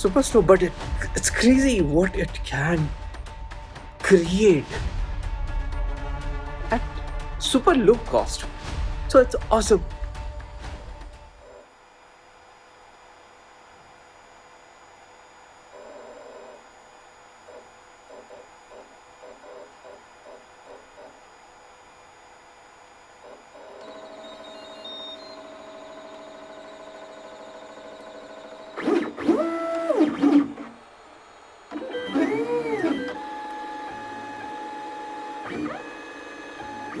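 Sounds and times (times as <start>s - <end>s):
stepper motors whining: 23.3s - 37.0s.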